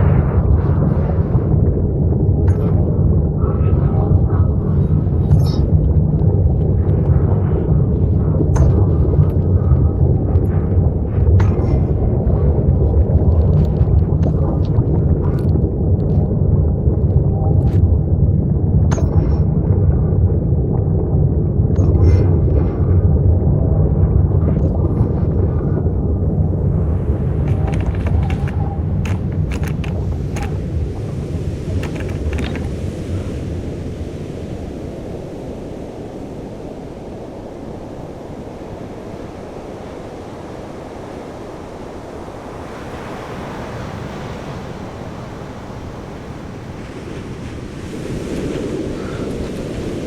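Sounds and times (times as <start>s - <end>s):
heavy low rumble: 0.0s - 36.3s
surging water: 0.0s - 50.0s
wind: 0.0s - 50.0s
sharp clicks and crackles: 8.2s - 16.3s, 18.8s - 19.5s, 27.2s - 32.9s.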